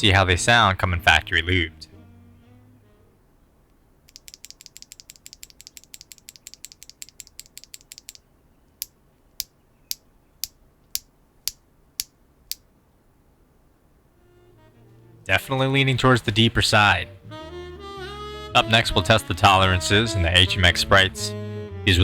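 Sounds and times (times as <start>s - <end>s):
mechanical keyboard clacks: 4.1s - 8.2s.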